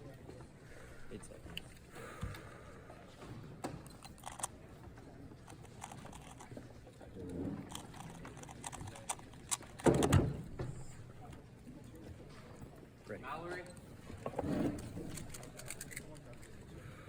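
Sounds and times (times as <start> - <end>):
speed cube clicking: 3.9 - 4.5, 5.4 - 6.6, 7.6 - 10.1.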